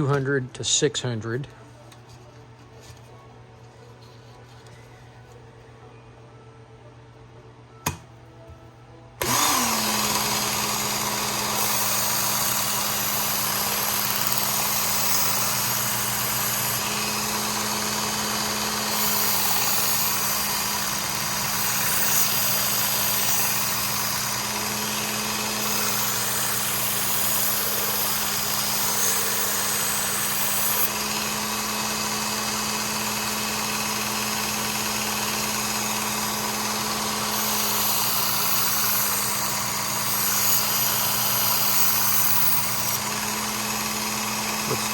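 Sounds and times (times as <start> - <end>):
belt sharpener humming: 7.8 - 8.6, 9.2 - 44.9
sharp click: 7.9 - 8.1.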